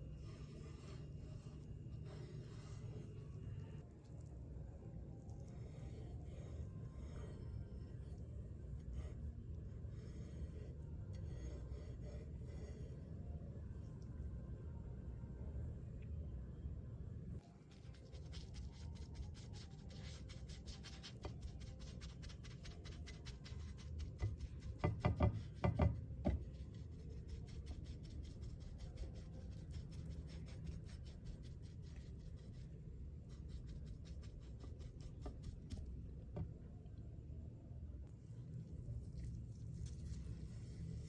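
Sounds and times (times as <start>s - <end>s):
low hum: 0.0s - 17.5s
paint tool scraping and tapping: 24.1s - 26.5s.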